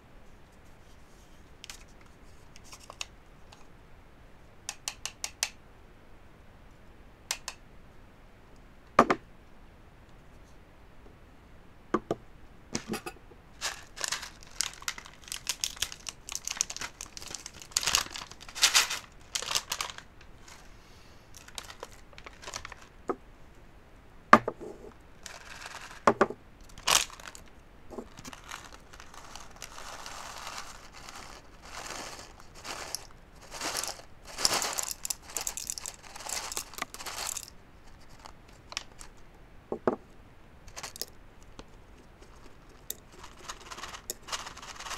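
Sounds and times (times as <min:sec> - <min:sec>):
crinkly packaging crumpling: 0:13.6 - 0:23.0, 0:25.2 - 0:39.2, 0:40.7 - 0:44.9.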